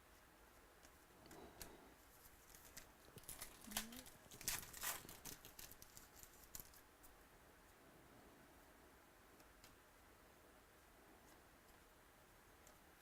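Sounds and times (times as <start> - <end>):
wrapper crinkling: 2.4 - 6.8.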